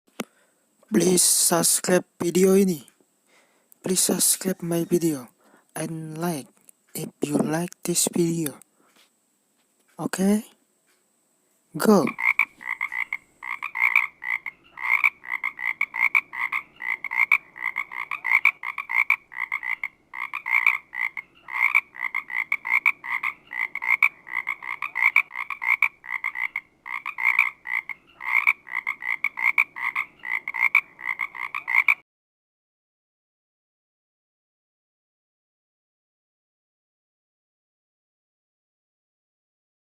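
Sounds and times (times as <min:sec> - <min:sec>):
frog croaking: 0:11.8 - 0:32.0.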